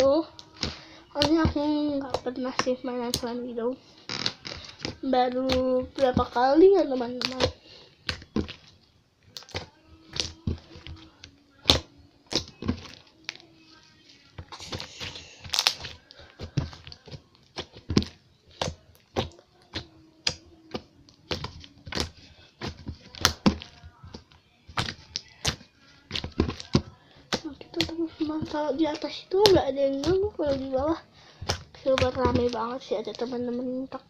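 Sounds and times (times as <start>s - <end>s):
slime squelching with sticky pops: 4.1s - 8.7s, 14.4s - 33.9s.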